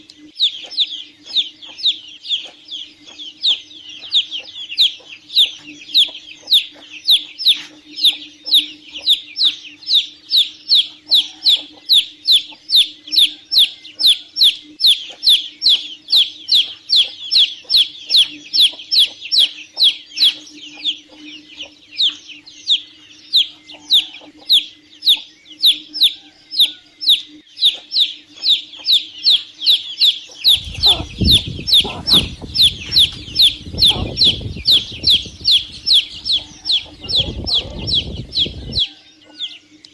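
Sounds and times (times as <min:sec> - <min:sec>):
chicks peeping: 0:30.5 - 0:38.8.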